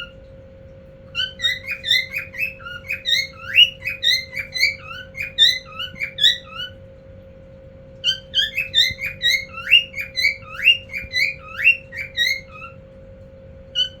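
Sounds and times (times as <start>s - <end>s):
cockatiel whistling: 1.1s - 6.8s, 8.0s - 12.8s, 13.8s - 14.0s.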